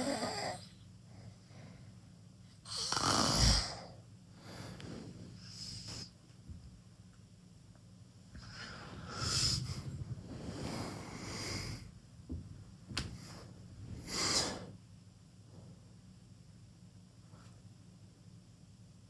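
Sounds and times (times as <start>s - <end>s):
person snoring: 0.0s - 0.7s, 2.7s - 4.0s
steady low hum: 0.0s - 19.0s.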